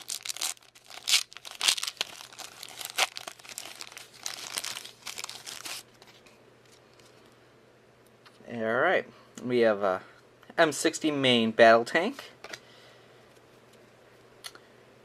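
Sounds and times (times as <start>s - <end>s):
plastic wrapper crinkling and tearing: 0.0s - 7.1s.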